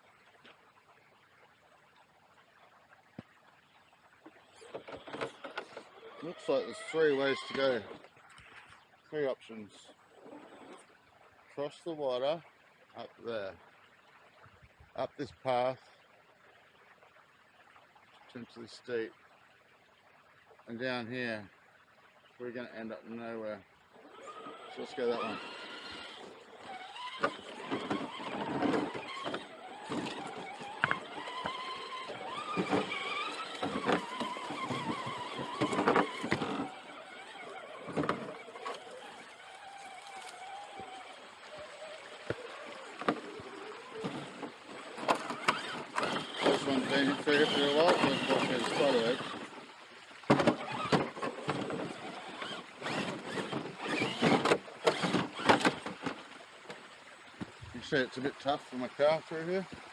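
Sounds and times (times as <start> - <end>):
drivetrain whirring: 4.1 - 9.0, 24.0 - 56.3
scraping on rocks: 4.6 - 8.8, 24.0 - 49.6, 50.3 - 56.2
electric motor whining: 24.0 - 49.5, 50.3 - 55.8
toy truck knocking on rocks: 27.0 - 37.2, 52.4 - 55.7
knocks and clacks on rocks: 29.9 - 31.6.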